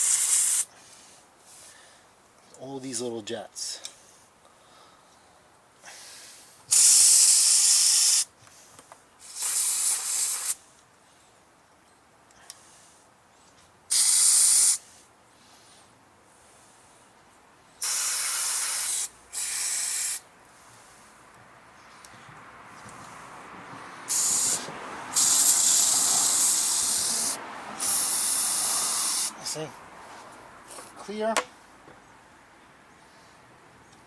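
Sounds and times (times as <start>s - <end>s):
aerosol spray hissing: 0.0s - 0.7s, 6.7s - 8.3s, 9.2s - 10.6s, 13.9s - 14.9s, 17.8s - 20.3s, 24.1s - 29.5s.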